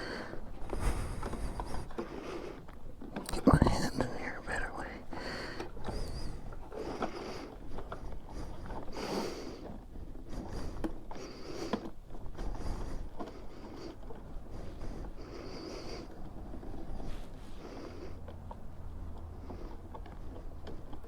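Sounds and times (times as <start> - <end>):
hands rustling and rubbing: 16.3 - 17.6.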